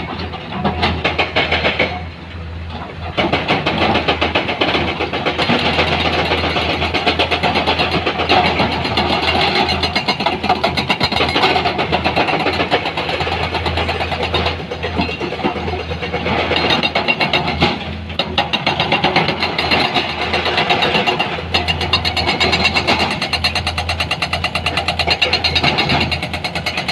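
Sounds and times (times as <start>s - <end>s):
diesel engine clattering: 0.0s - 26.9s.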